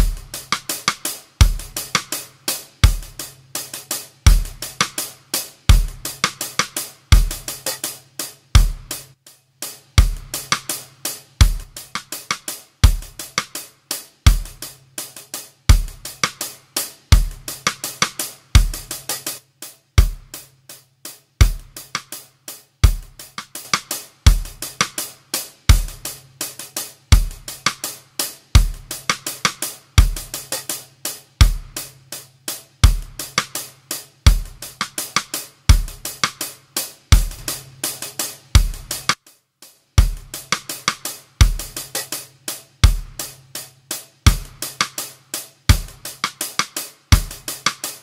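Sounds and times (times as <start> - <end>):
kick drum: 0.0 - 0.6, 1.4 - 2.0, 2.8 - 3.2, 4.2 - 4.9, 5.7 - 6.3, 7.1 - 7.6, 8.5 - 9.1, 10.0 - 10.5, 11.4 - 12.0, 12.8 - 13.4, 14.3 - 14.7, 15.7 - 16.2, 17.1 - 17.7, 18.6 - 18.9, 20.0 - 20.4, 21.4 - 21.8, 22.8 - 23.5, 24.3 - 24.8, 25.7 - 26.1, 27.1 - 27.7, 28.5 - 29.2, 30.0 - 30.4, 31.4 - 31.9, 32.8 - 33.4, 34.2 - 35.0, 35.7 - 36.3, 37.1 - 37.8, 38.5 - 39.2, 40.0 - 40.6, 41.4 - 41.9, 42.8 - 43.3, 44.2 - 44.8, 45.7 - 46.3, 47.1 - 47.6
hi-hat and cymbal ticks: 0.0 - 48.0.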